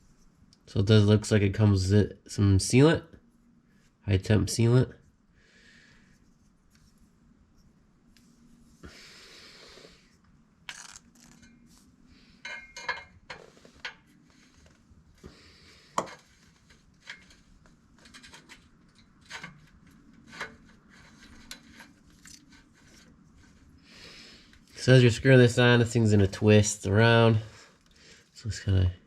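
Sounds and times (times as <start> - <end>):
rustle of handling: 6.1 - 8.8, 13.3 - 23.8.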